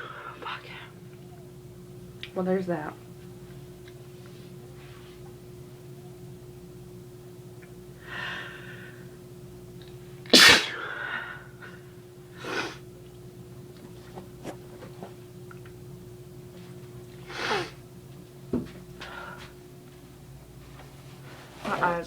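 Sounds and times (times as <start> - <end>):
person sneezing: 10.3 - 11.0, 17.3 - 17.8.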